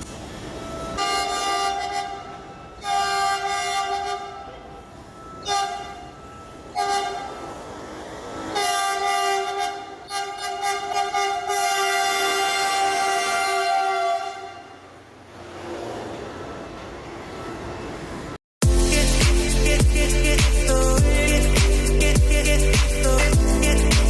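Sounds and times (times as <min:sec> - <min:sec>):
train horn blasts: 0:00.8 - 0:15.0.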